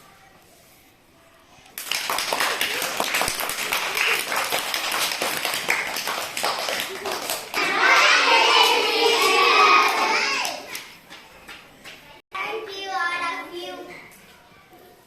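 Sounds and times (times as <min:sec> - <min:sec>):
children clapping fast: 0:01.8 - 0:12.1
children shouting in unison: 0:07.6 - 0:10.7.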